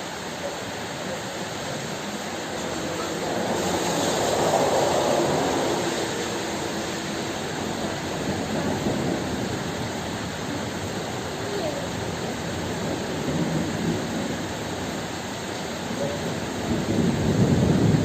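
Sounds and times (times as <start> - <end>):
heavy rain: 0.0 - 18.0
rolling thunder: 2.2 - 14.9, 16.2 - 18.0.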